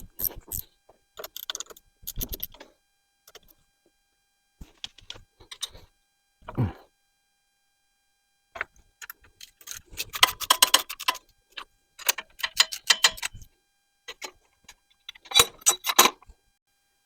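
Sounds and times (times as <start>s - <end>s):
ratchet wrench clicking: 12.0s - 13.4s.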